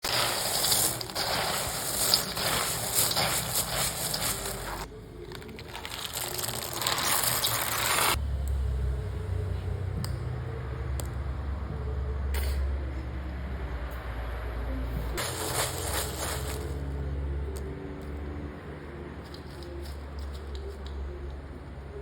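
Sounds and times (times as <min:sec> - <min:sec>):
coffee beans rattling and scraping: 0:00.0 - 0:08.2, 0:15.2 - 0:17.0, 0:19.2 - 0:21.0.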